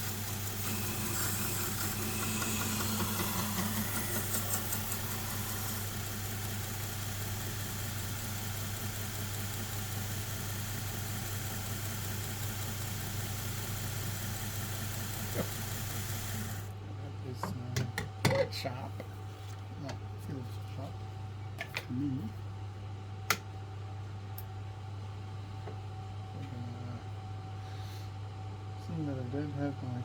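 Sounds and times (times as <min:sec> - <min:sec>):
belt grinder motor running: 0:00.0 - 0:16.7.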